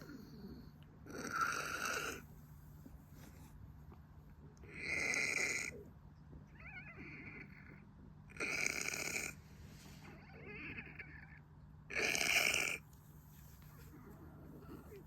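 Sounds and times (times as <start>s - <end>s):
cat snoring: 0.0s - 2.2s, 4.7s - 5.8s, 8.4s - 9.4s, 11.9s - 12.8s.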